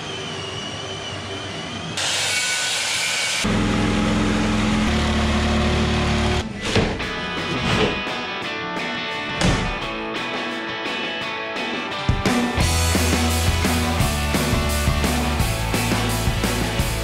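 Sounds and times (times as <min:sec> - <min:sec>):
low motor hum: 0:03.5 - 0:06.6.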